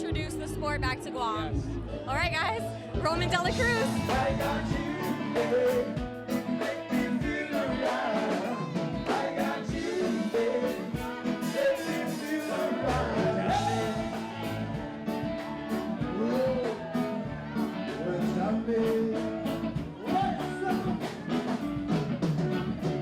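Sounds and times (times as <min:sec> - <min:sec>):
bass: 0:00.0 - 0:23.0
guitar: 0:00.0 - 0:23.0
drum beat: 0:03.0 - 0:17.5, 0:18.9 - 0:23.0
person singing: 0:03.5 - 0:21.1.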